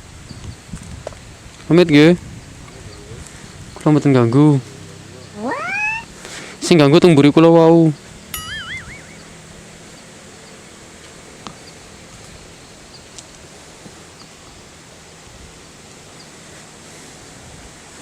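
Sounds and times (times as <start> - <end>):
outdoor ambient hiss: 0.0 - 8.3, 9.2 - 18.0
short high chirps: 5.4 - 6.1, 8.4 - 9.5.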